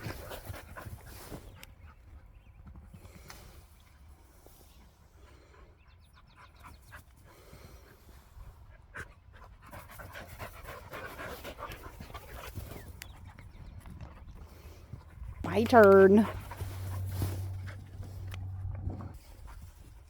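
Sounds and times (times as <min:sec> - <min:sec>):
dog panting: 0:05.3 - 0:20.0.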